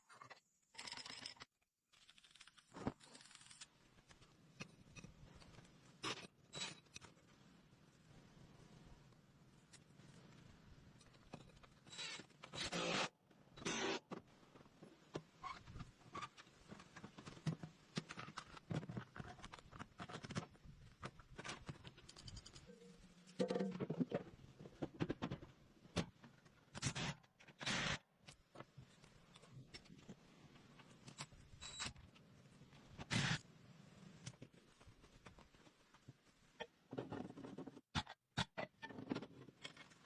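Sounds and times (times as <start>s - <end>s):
metal tools clicking and scraping: 21.8s - 23.8s.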